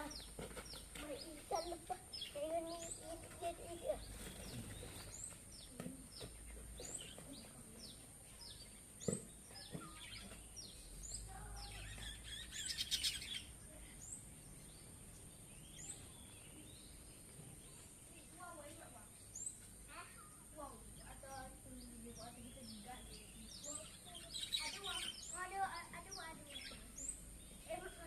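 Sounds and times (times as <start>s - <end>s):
bird calling with high thin notes: 9.4s - 14.2s.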